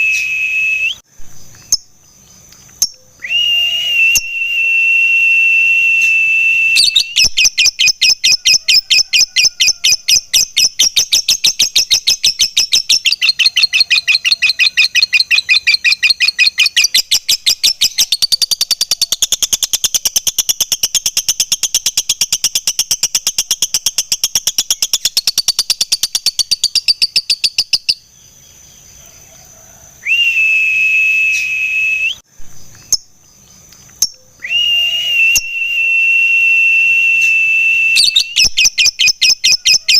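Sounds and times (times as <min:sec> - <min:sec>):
lovebird whistling: 0:00.0 - 0:01.0, 0:02.9 - 0:28.0, 0:30.1 - 0:32.2, 0:34.0 - 0:39.9
lovebird chattering trill: 0:06.8 - 0:28.1, 0:38.0 - 0:39.9.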